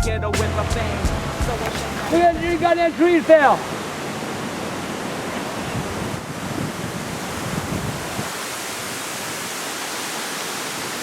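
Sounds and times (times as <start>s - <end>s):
strong wind blowing: 1.2s - 8.3s
wind buffeting microphone: 4.3s - 8.3s.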